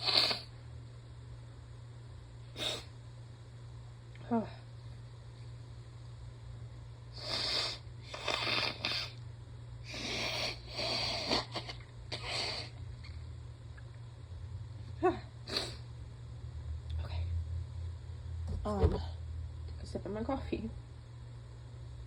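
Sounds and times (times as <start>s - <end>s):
woman sniffling and breathing hard: 9.8s - 12.8s, 15.4s - 15.9s.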